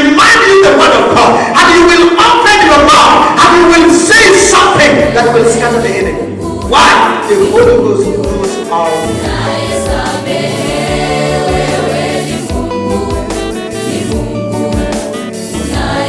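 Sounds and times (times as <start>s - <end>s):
choir singing held notes: 3.2s - 16.0s
steady beat: 4.7s - 16.0s.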